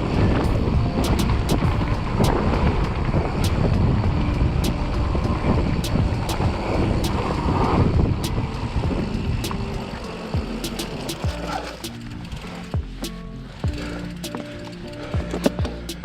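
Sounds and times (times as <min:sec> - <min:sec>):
bike tyres rumbling on dirt: 0:00.0 - 0:16.0
light ticking: 0:09.4 - 0:16.0.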